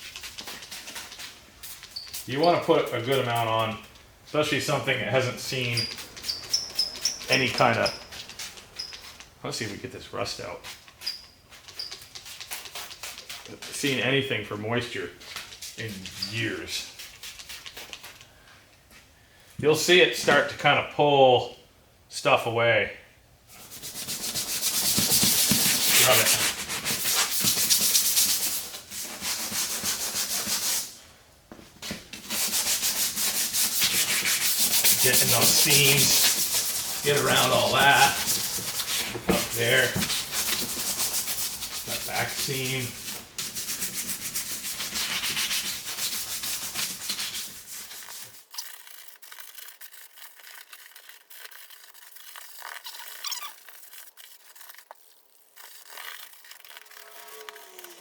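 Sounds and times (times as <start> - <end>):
scrubbing upholstery: 4.5 - 9.2, 23.6 - 30.9, 32.2 - 48.4
light rubbing and taps: 5.1 - 10.0, 23.6 - 30.8, 31.5 - 48.2.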